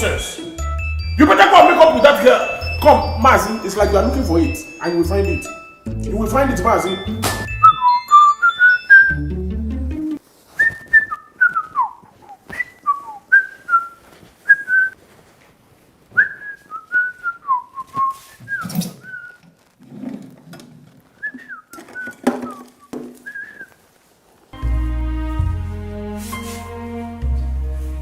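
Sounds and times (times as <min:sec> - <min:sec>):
person whistling a tune: 0:07.2 - 0:09.4, 0:10.6 - 0:15.0, 0:21.2 - 0:23.8.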